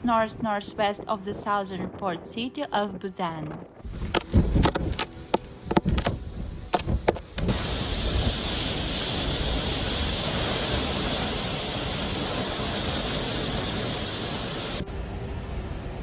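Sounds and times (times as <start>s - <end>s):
typhoon storm rushing: 5.7s - 16.0s.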